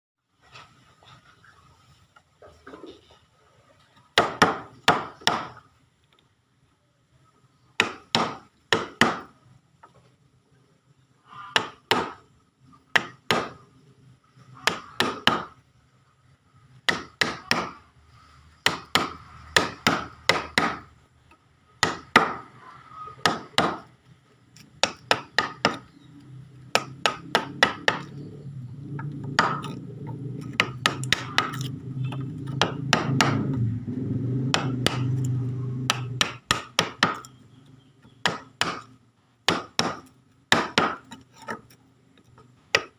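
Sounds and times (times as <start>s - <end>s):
hammer striking chisel into wood: 4.2s - 5.6s, 7.8s - 9.3s, 11.5s - 12.2s, 12.9s - 13.6s, 14.6s - 15.6s, 16.9s - 17.8s, 18.6s - 20.8s, 21.8s - 22.5s, 23.2s - 23.9s, 24.8s - 25.9s, 26.7s - 28.2s, 29.0s - 29.8s, 30.4s - 33.6s, 34.5s - 35.3s, 35.9s - 37.4s, 38.2s - 38.9s, 39.5s - 41.5s
low hum: 25.8s - 36.6s.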